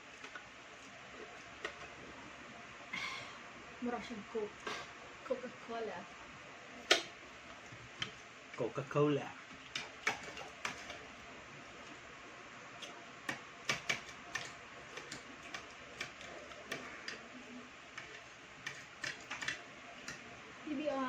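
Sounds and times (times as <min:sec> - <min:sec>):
utensils clicking on plates: 0:18.0 - 0:20.2.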